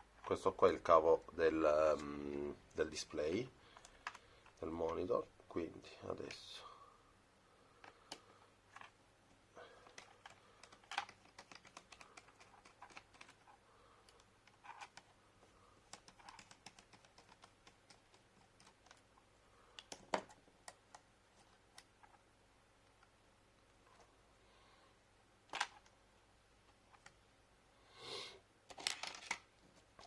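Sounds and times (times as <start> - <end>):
laptop parts clicking and tapping: 3.8 - 4.6, 9.8 - 15.2, 15.8 - 22.2.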